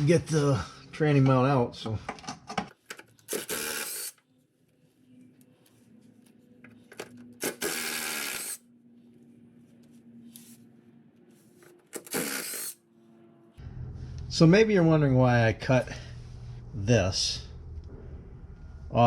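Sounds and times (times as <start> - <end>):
power tool burst: 3.3 - 4.2, 7.4 - 8.6, 12.0 - 12.8.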